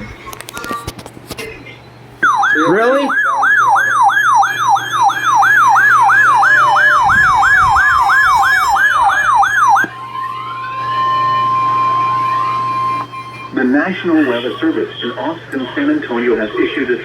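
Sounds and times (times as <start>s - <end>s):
steady alert tone: 2.2s - 14.7s
electronic siren yelping: 2.2s - 15.4s.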